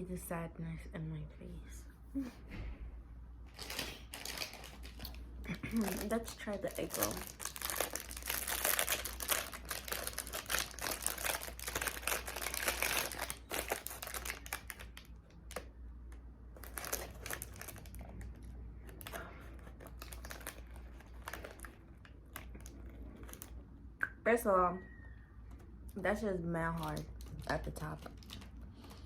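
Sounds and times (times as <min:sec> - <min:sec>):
takeout paper crinkling: 0:03.5 - 0:15.7, 0:16.6 - 0:23.6, 0:26.6 - 0:29.0.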